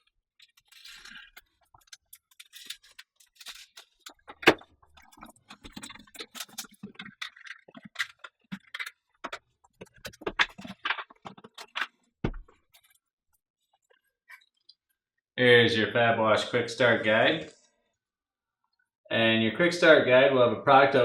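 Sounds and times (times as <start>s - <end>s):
packaging rustling and clicking: 0.4s - 12.1s.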